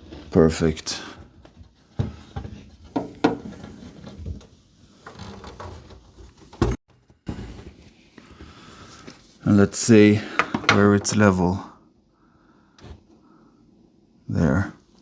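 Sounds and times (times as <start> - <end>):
mirror knocking and scraping on wall: 2.0 - 4.4, 10.3 - 11.3.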